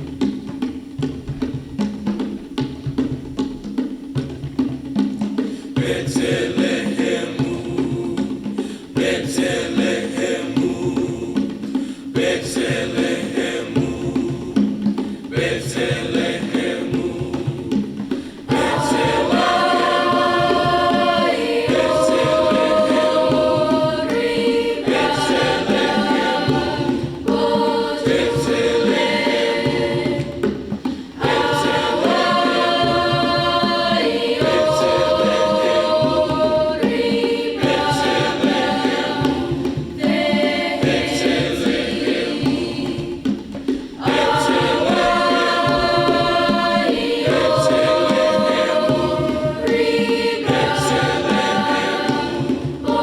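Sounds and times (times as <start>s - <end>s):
choir singing with accompaniment: 0.0s - 53.0s.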